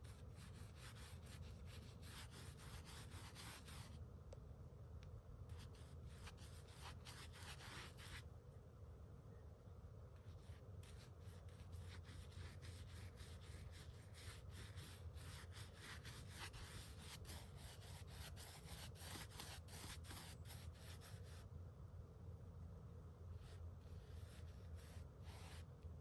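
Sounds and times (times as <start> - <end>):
paintbrush strokes on wood: 5.6 - 8.2, 10.2 - 21.5, 23.4 - 25.7.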